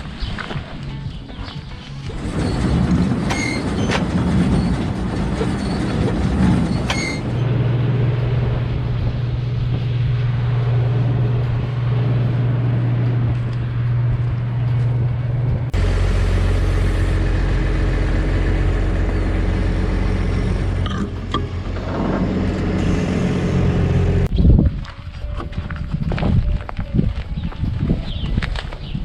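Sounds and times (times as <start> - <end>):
combine harvester engine droning: 2.0 - 24.3.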